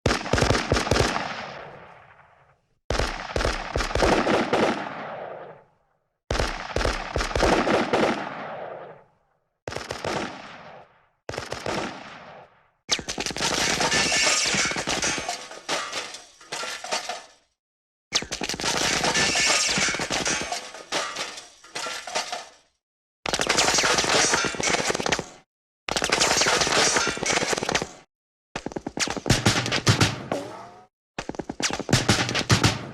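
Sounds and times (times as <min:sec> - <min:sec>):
machine-gun fire bursts: 0:00.1 - 0:02.0, 0:02.9 - 0:05.6, 0:06.3 - 0:09.0, 0:09.7 - 0:15.3, 0:23.3 - 0:28.1, 0:31.5 - 0:32.9.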